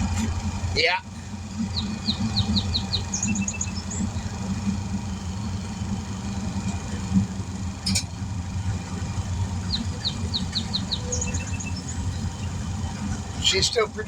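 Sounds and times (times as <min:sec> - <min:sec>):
air compressor droning: 0:00.0 - 0:14.0
bird chirping: 0:01.5 - 0:05.8, 0:08.8 - 0:13.8.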